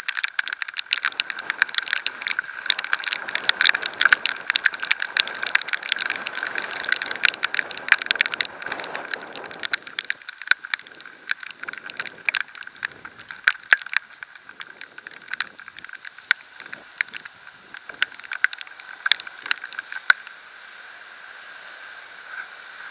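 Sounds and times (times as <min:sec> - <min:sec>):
heavy rain drumming on camera: 0:00.0 - 0:22.9
wind and road spray hiss: 0:14.1 - 0:22.9.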